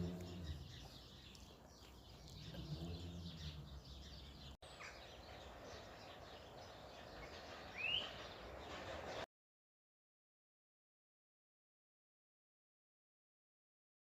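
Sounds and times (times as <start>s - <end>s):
rising bird chirp: 0.0s - 9.2s
birdsong: 0.0s - 9.3s.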